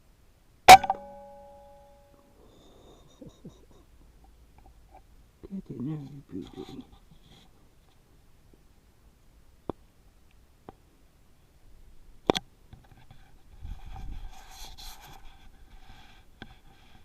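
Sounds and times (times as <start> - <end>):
rustling scuffling noise: 12.8 - 17.0.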